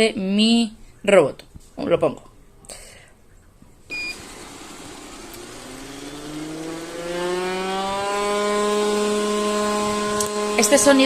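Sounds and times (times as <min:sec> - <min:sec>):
robot vacuum beep: 0:03.9 - 0:04.7
robot vacuum whining drone: 0:04.1 - 0:11.0.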